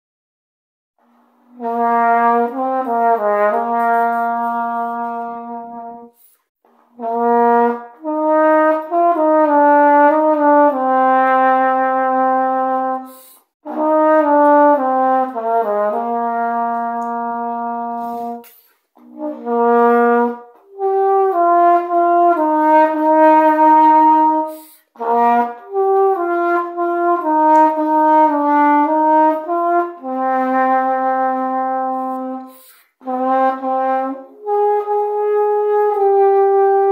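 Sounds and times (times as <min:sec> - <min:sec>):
tenor horn melody: 0:01.5 - 0:06.4, 0:07.0 - 0:36.9.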